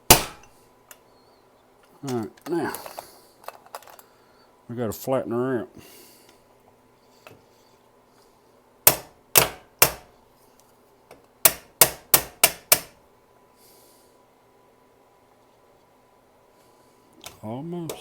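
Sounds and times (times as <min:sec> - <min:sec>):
hammer striking metal: 0:00.0 - 0:00.5.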